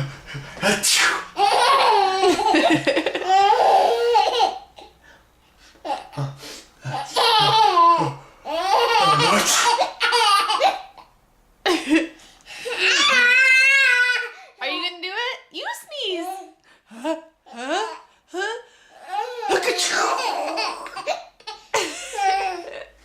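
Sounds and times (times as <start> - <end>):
adult voice: 0.6 - 1.3, 9.0 - 9.7, 19.4 - 20.6
baby giggling and squealing: 1.4 - 2.6, 6.9 - 10.8.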